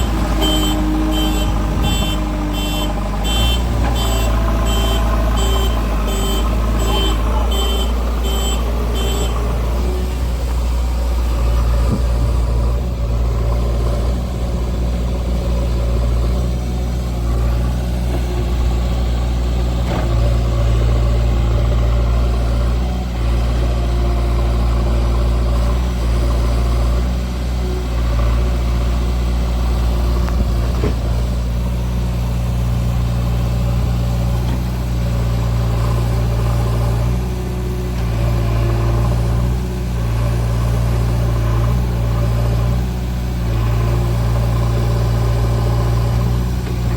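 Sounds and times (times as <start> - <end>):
reversing alarm beeping: 0.0 - 9.4
diesel engine running: 0.0 - 46.9.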